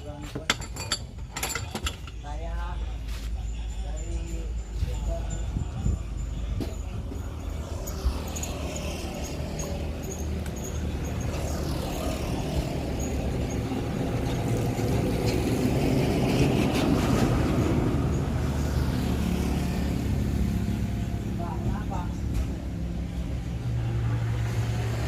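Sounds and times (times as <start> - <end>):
vehicle engine rumbling: 0.0 - 25.0.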